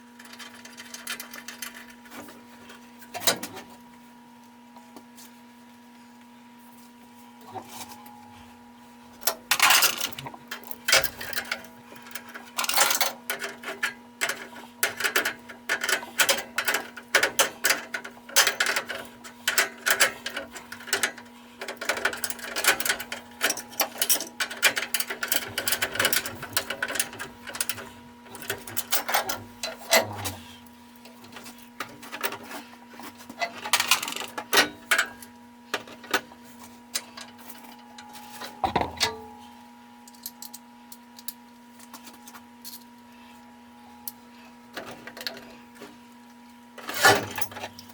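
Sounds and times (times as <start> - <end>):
steady low hum: 0.0 - 47.9.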